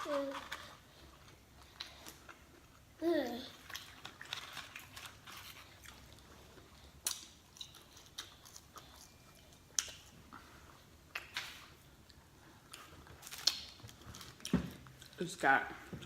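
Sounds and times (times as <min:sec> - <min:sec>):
person chewing: 0:03.5 - 0:15.2.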